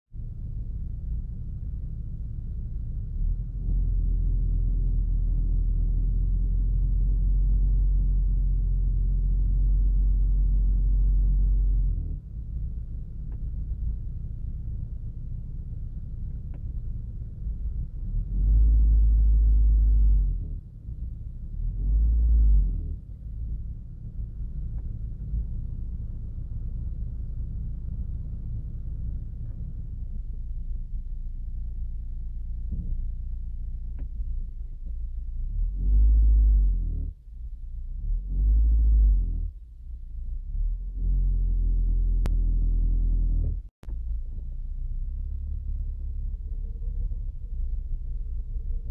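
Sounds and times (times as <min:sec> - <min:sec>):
car engine idling: 0:00.2 - 0:05.7, 0:12.2 - 0:18.4, 0:23.0 - 0:35.8, 0:43.8 - 0:48.9
engine revving: 0:18.0 - 0:20.7
engine knocking and rattling: 0:43.6 - 0:48.9.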